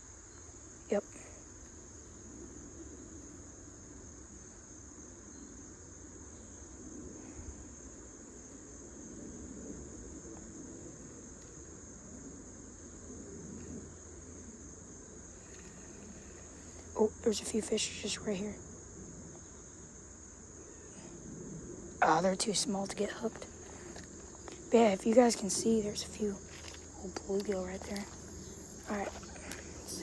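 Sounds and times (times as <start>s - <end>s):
crickets chirring: 0.0s - 30.0s
low uneven rumble: 20.7s - 30.0s.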